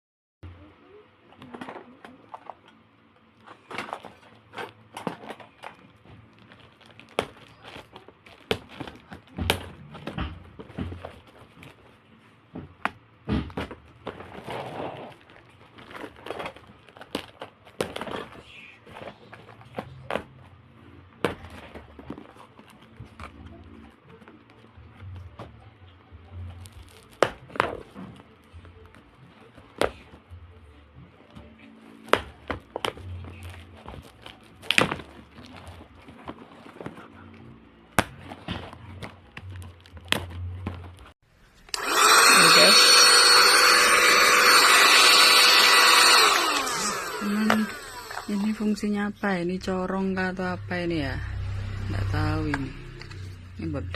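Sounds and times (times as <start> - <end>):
packaging crinkling: 3.3 - 9.4, 13.8 - 20.3, 26.6 - 29.8, 32.0 - 37.2
vacuum motor whirring: 41.7 - 48.9.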